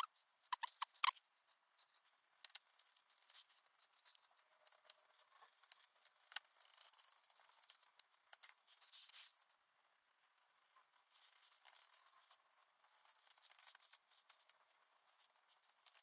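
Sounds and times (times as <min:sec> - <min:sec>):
small clicks and taps of parts: 0:01.9 - 0:09.5, 0:15.2 - 0:16.0.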